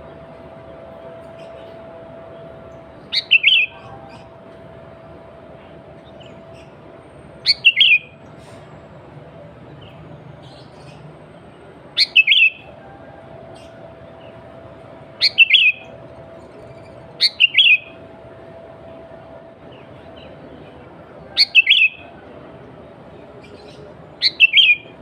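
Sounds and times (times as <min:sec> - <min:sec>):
bulbul chirping song: 0:02.6 - 0:04.4, 0:06.0 - 0:08.2, 0:09.8 - 0:12.8, 0:15.1 - 0:18.0, 0:19.7 - 0:22.1, 0:23.4 - 0:25.0.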